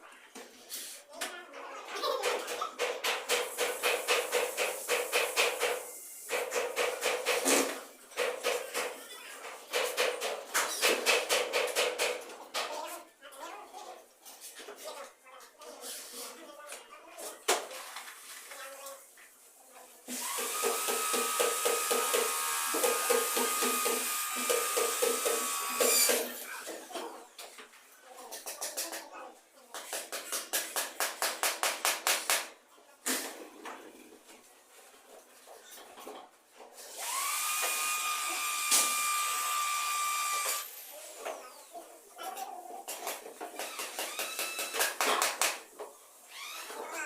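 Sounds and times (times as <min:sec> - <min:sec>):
power tool motor whining: 0:20.2 - 0:26.4, 0:36.9 - 0:40.9.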